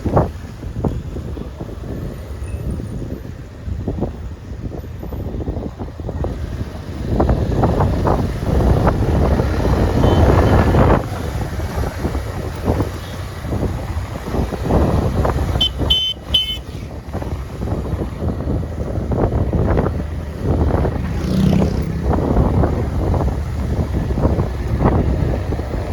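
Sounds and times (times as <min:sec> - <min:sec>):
motorbike rumble: 0:00.0 - 0:25.9
wind buffeting microphone: 0:00.0 - 0:25.9
vehicle horn beeps: 0:10.0 - 0:10.8, 0:15.5 - 0:16.8.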